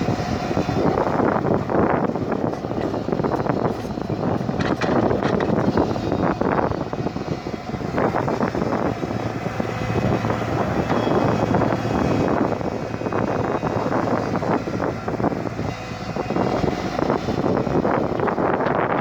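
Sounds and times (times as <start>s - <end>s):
excavator engine running: 0.0s - 19.0s
short knocks and scrapes: 2.5s - 5.8s.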